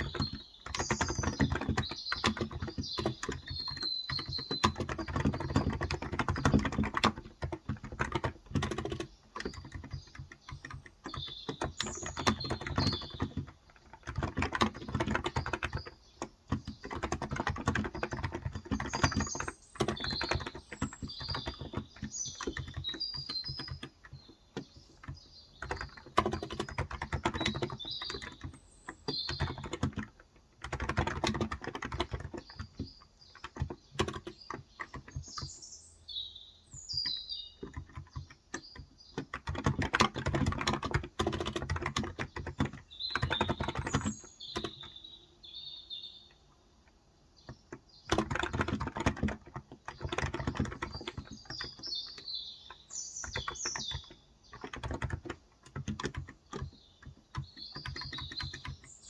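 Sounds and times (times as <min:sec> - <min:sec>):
typing on keyboard: 0:00.0 - 0:35.7, 0:36.6 - 0:45.1, 0:46.3 - 0:59.0
small birds chirping: 0:00.0 - 0:59.0.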